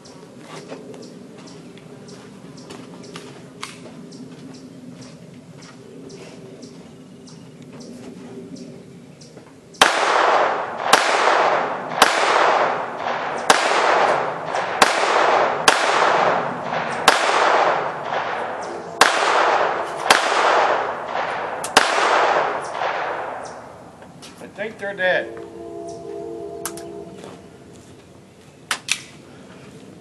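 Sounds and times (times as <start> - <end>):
pistol shots with rolling echo: 9.8 - 23.9.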